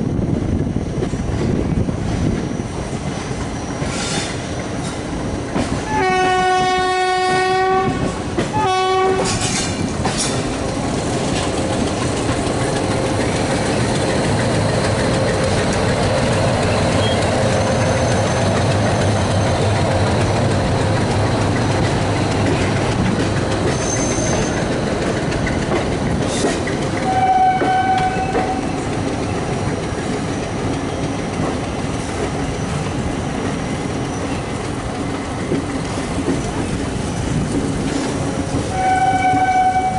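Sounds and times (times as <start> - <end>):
train rumble: 0.0 - 39.9
wheels clattering over rail joints: 2.3 - 39.9
locomotive horn: 5.8 - 9.5, 27.0 - 28.7, 38.7 - 39.9
shorter higher horn: 5.8 - 9.6, 27.0 - 28.8, 38.7 - 39.9.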